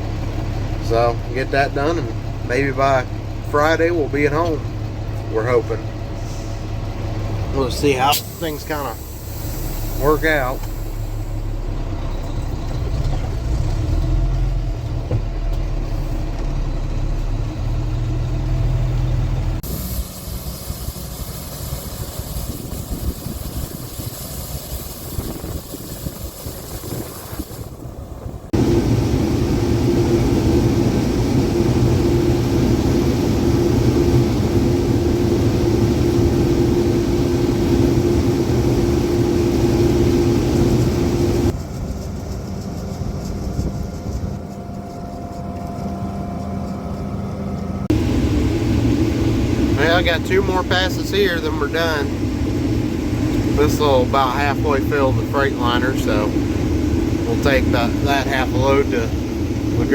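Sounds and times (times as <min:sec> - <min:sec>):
diesel farm machinery engine running: 0:00.0 - 0:59.9
steady hum: 0:07.5 - 0:11.6, 0:19.6 - 0:59.9.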